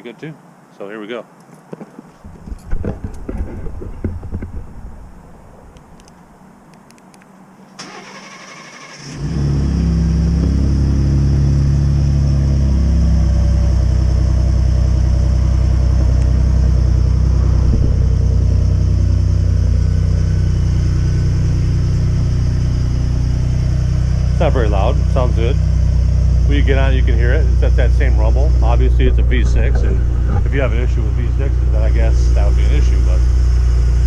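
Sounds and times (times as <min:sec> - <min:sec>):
engine cranking: 0:07.8 - 0:09.6, 0:24.2 - 0:33.5
engine idling: 0:07.8 - 0:34.0.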